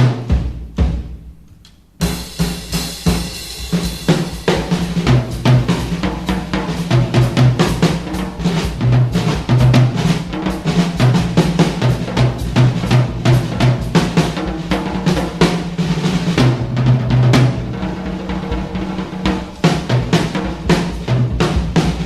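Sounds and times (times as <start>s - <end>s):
drum-driven background music: 0.0s - 22.0s
cymbal crash: 2.0s - 22.0s.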